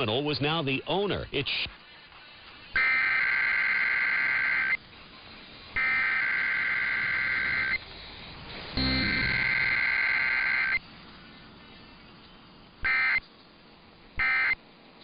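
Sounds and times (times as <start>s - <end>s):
screechy digital data bursts: 2.8s - 4.8s, 5.8s - 7.8s, 8.8s - 10.8s, 12.8s - 13.2s, 14.2s - 14.6s.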